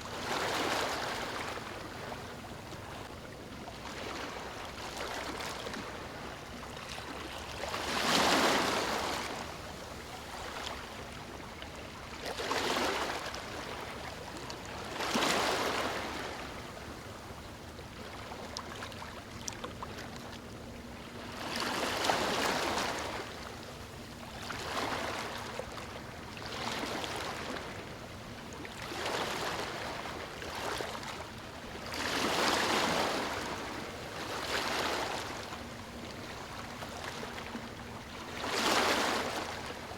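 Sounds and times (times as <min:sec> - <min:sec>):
small waves breaking on beach: 0:00.0 - 0:03.1, 0:03.7 - 0:17.0, 0:21.2 - 0:27.9, 0:28.7 - 0:39.9.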